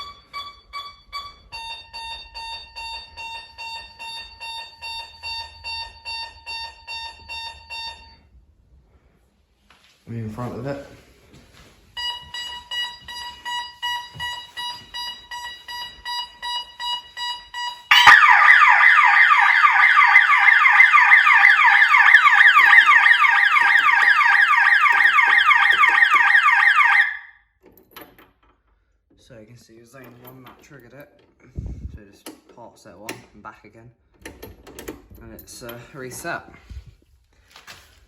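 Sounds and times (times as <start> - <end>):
pulsed alarm warning beeps: 0.0 - 8.2, 12.0 - 27.3
fast-sweeping alarm siren: 12.2 - 27.4.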